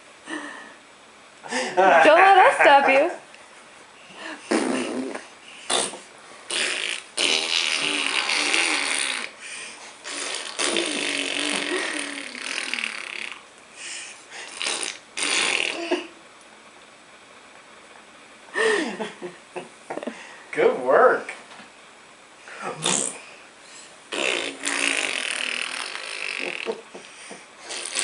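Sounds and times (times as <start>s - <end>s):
imitation fart noises: 4.4s - 9.4s, 10.0s - 13.5s, 14.4s - 16.1s, 22.7s - 23.3s, 24.1s - 26.8s, 27.6s - 28.0s.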